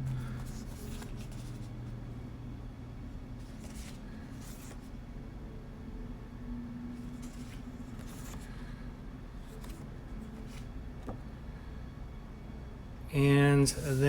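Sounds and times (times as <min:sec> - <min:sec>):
paper rustling: 0:00.0 - 0:01.7, 0:03.4 - 0:05.0, 0:07.0 - 0:08.7, 0:09.4 - 0:11.2, 0:13.7 - 0:14.0
faint low hum: 0:00.0 - 0:14.0.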